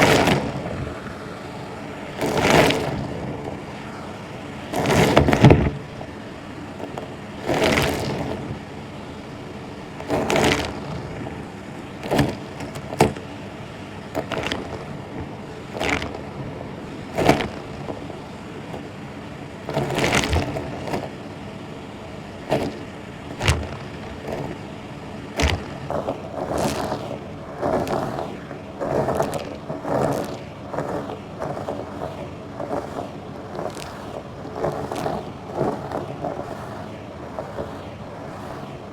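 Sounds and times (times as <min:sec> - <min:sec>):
vacuum swishes and knocks on floor: 0:04.7 - 0:05.8, 0:19.7 - 0:21.0, 0:23.4 - 0:24.6, 0:25.4 - 0:27.0.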